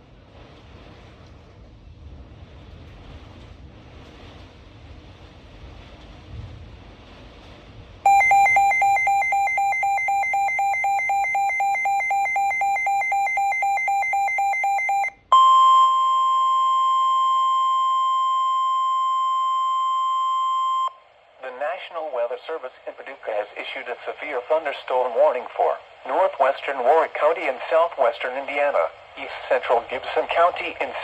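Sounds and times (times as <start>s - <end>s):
rapid electronic beeping: 8.1s - 15.2s
steady alarm tone: 8.1s - 20.9s.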